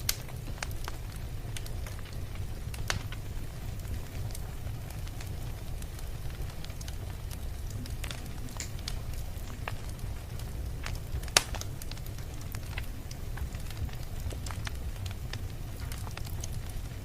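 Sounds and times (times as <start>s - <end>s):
steady low rumble: 0.0s - 17.0s
wood fire crackling and popping: 0.0s - 17.0s.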